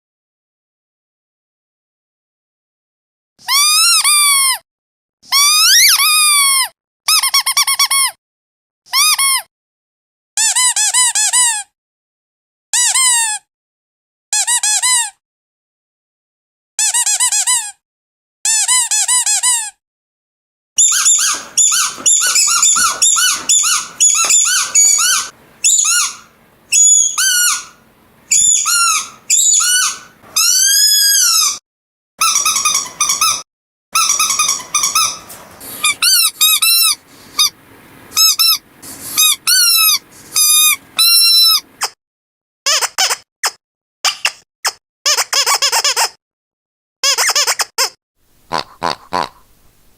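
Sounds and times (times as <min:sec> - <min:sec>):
squeaky dog toy squeaking: 0:03.5 - 0:04.6, 0:05.3 - 0:08.2, 0:08.9 - 0:09.5, 0:10.4 - 0:11.6, 0:14.3 - 0:15.2, 0:16.8 - 0:17.8, 0:18.5 - 0:19.8, 0:20.8 - 0:31.6, 0:32.2 - 0:33.4, 0:34.0 - 0:37.6, 0:38.2 - 0:38.6, 0:39.2 - 0:41.9, 0:42.7 - 0:46.2, 0:47.0 - 0:48.0.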